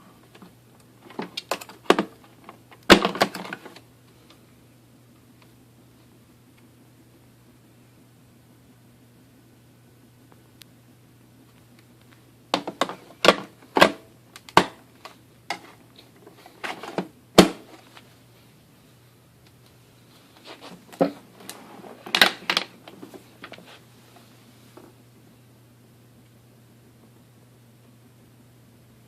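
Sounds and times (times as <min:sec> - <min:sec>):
plastic parts clicking and rattling: 0:00.3 - 0:03.8.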